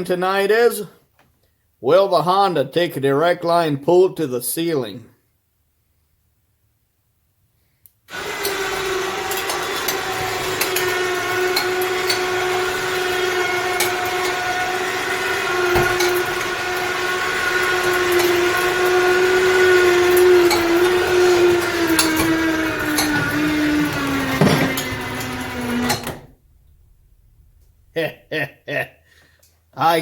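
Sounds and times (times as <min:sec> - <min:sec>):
electric winch motor whine: 0:08.1 - 0:28.0
winch ticking: 0:08.1 - 0:28.0.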